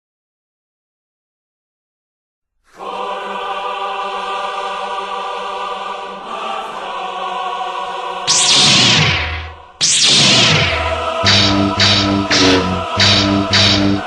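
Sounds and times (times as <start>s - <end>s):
choir holding a chord: 2.7s - 8.5s, 10.5s - 14.0s
lightsaber sweep effect: 8.3s - 14.0s.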